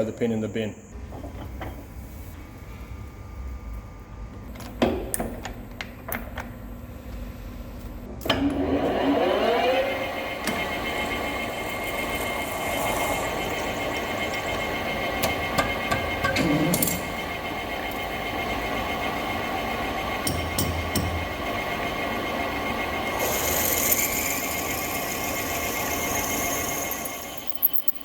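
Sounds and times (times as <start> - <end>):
lathe spindle whine: 8.3 - 28.0.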